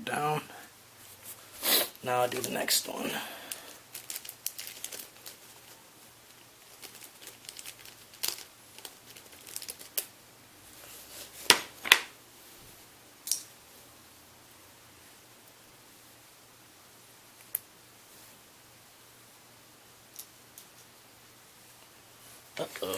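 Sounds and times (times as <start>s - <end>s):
small tool and metal parts clicking: 13.2s - 13.5s, 20.1s - 20.9s.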